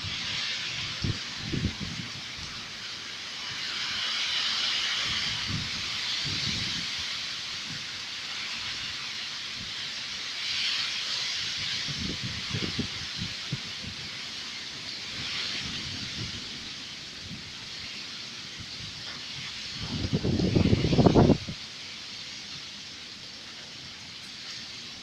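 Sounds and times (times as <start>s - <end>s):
rain and wind hissing: 0.0s - 25.0s
low thunder rumbles: 19.7s - 21.6s.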